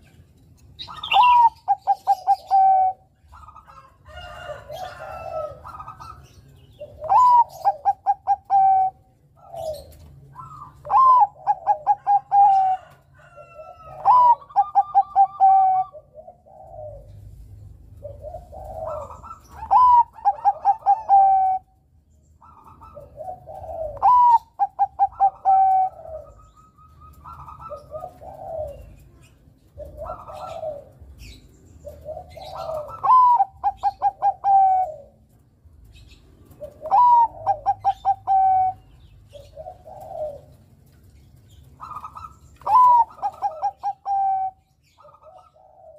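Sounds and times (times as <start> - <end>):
dove singing loud phrases: 0.8 - 17.2, 18.0 - 21.8, 22.4 - 35.2, 36.0 - 40.6, 41.5 - 45.9
soft low dove coos: 6.8 - 21.8, 22.6 - 35.4, 36.5 - 41.0.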